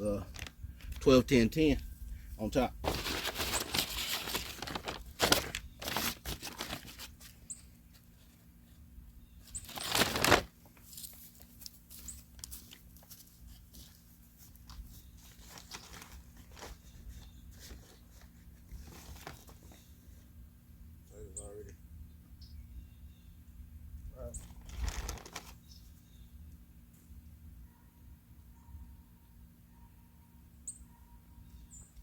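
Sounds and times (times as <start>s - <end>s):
plastic bag rustling and crinkling: 0.2s - 1.1s, 2.8s - 8.2s, 9.6s - 19.9s, 24.4s - 25.6s.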